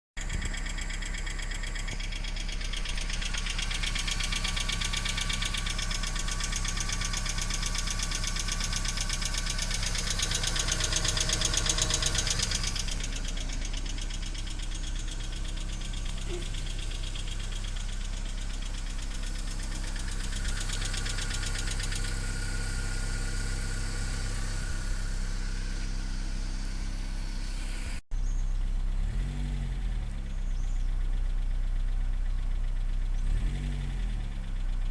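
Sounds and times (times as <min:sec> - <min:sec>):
car engine idling: 0:00.2 - 0:34.9.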